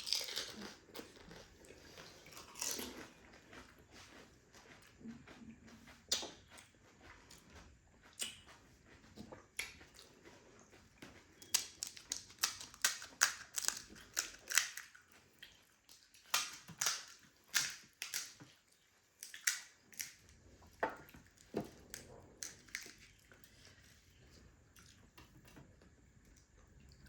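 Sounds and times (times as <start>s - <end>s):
crisp shells crunching: 11.6s - 14.9s.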